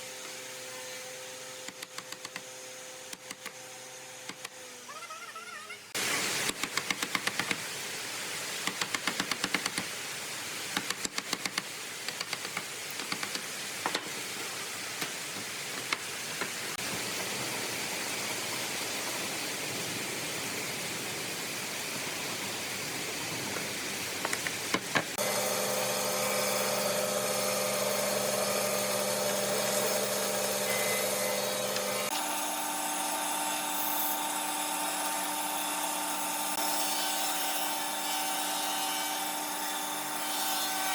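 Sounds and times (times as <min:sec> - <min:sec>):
motorised tool whine: 0:25.2 - 0:36.6
power tool whirring: 0:25.2 - 0:40.9.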